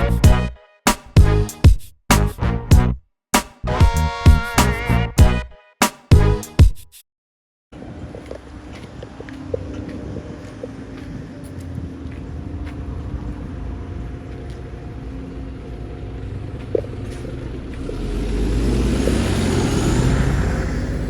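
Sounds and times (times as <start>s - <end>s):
car passing: 7.8s - 21.0s.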